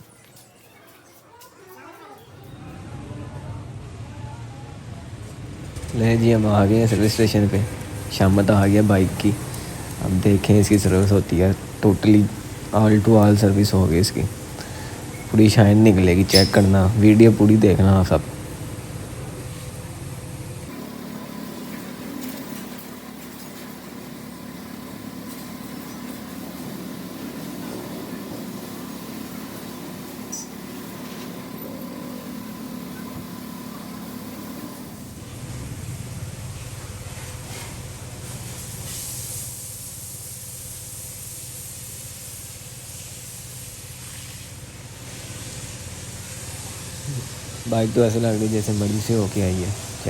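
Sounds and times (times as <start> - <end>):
machine humming with whine: 2.3 - 38.8
pressure washer spray hissing: 5.8 - 50.0.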